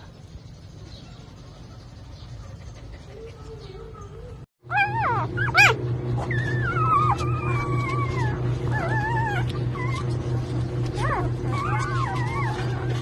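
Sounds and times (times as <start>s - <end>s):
steady low hum: 0.0s - 13.0s
puppies squealing and whimpering: 4.7s - 13.0s.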